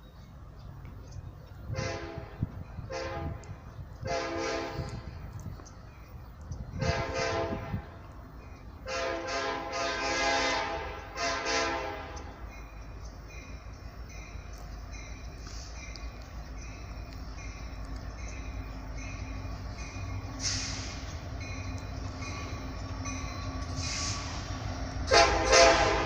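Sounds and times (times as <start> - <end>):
locomotive air horn blasts: 1.7 - 5.1, 6.8 - 8.0, 8.8 - 12.4, 23.7 - 26.0.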